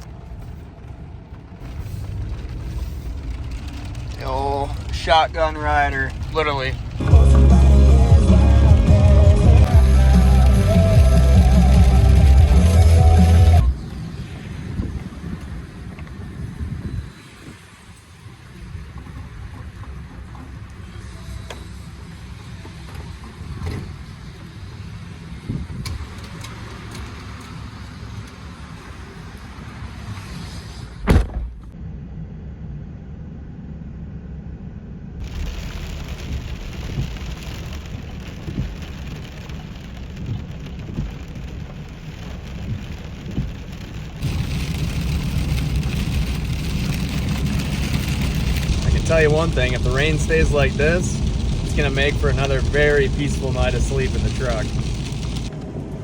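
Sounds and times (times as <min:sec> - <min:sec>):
heavy rain on a truck: 0:00.0 - 0:30.8, 0:35.2 - 0:56.0
engine and road rumble: 0:00.0 - 0:56.0
loud thump: 0:31.0 - 0:31.8.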